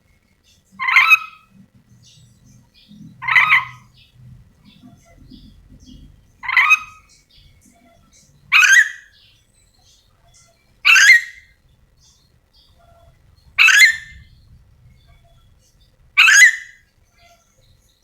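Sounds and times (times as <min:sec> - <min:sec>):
lorikeet harsh calls: 0:00.8 - 0:05.5, 0:06.3 - 0:09.3, 0:10.3 - 0:11.6, 0:12.7 - 0:14.3, 0:16.2 - 0:17.5.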